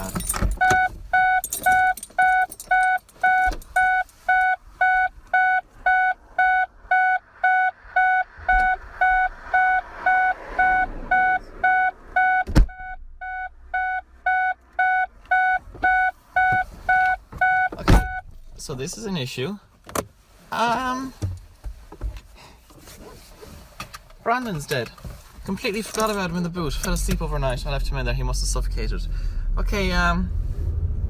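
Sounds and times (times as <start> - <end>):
car warning chime beeping: 0.0 - 18.4
sharp thump: 12.4 - 12.8.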